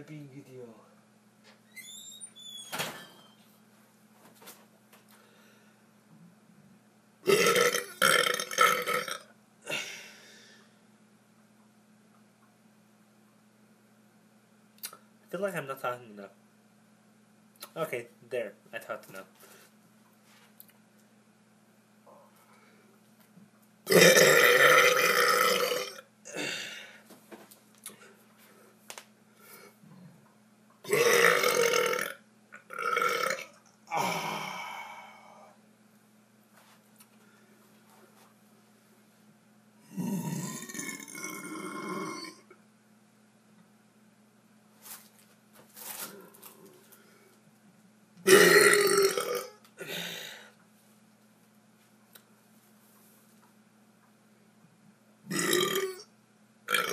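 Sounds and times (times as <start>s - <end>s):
man burping: 7.2s - 10.1s, 23.9s - 26.9s, 30.8s - 35.0s, 39.9s - 42.6s, 48.2s - 50.4s, 55.3s - 56.1s, 56.7s - 56.9s.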